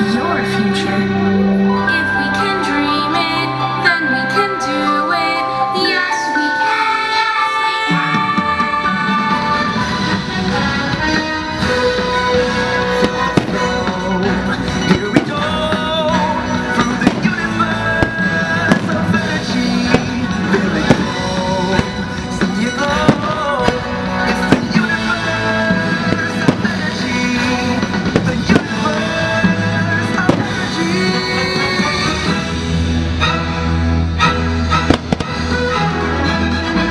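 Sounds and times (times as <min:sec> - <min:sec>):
music over loudspeakers: 0:00.0 - 0:36.9
fireworks bangs: 0:09.2 - 0:32.4, 0:34.7 - 0:35.6.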